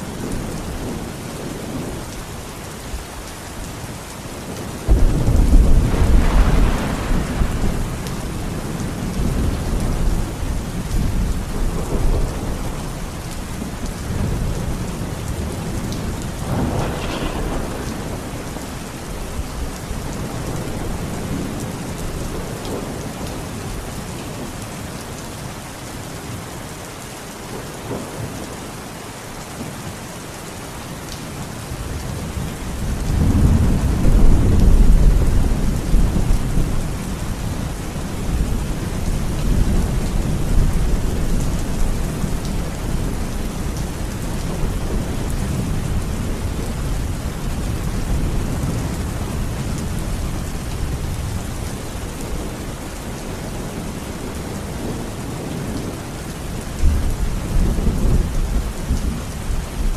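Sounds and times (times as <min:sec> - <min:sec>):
heavy rain falling: 0:00.0 - 0:59.9
rolling thunder: 0:04.5 - 0:23.3
sharp thunderclap: 0:04.9 - 0:08.3, 0:16.0 - 0:19.2.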